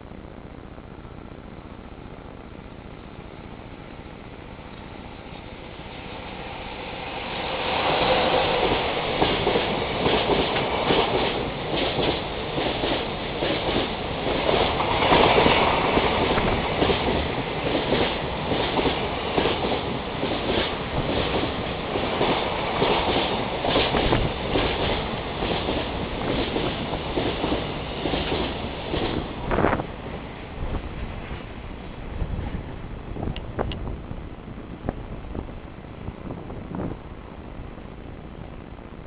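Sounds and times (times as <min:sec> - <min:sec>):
freight train passing: 0:00.0 - 0:39.0
wheels clacking over rail joints: 0:07.4 - 0:29.9.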